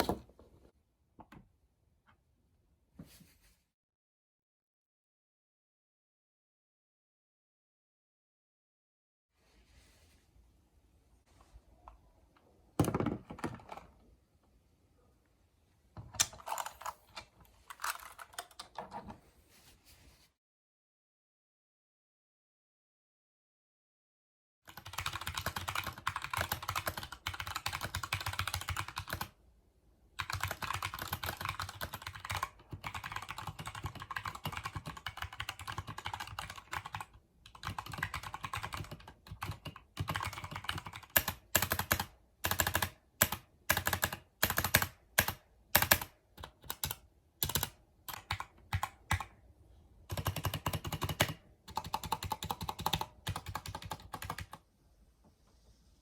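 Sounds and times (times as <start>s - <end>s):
mechanical keyboard typing: 17.7s - 19.0s, 24.7s - 29.3s, 30.2s - 49.3s, 50.1s - 54.6s.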